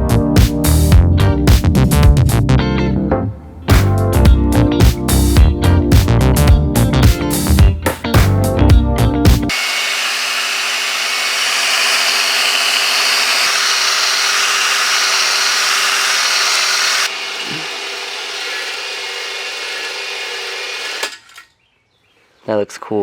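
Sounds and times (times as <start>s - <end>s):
power tool running: 9.5s - 21.5s.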